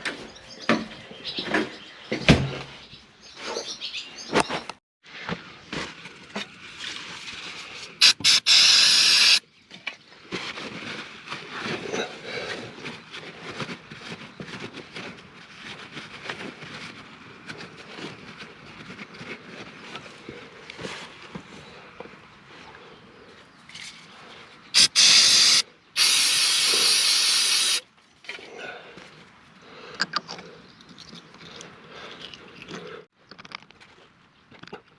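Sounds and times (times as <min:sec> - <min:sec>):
sharp hissing: 0:08.0 - 0:09.4, 0:24.8 - 0:27.8.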